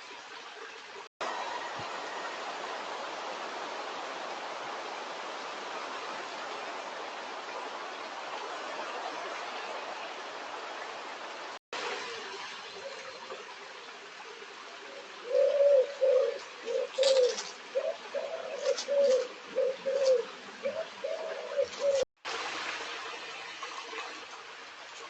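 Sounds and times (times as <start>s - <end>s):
stream rushing: 0.0s - 25.0s
pigeon cooing: 15.1s - 22.1s.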